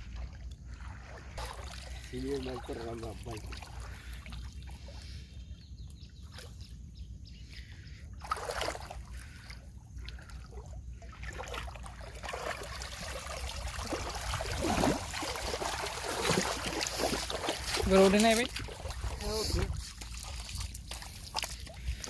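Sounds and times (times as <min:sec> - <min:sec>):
water splashing and trickling: 0:00.0 - 0:22.0.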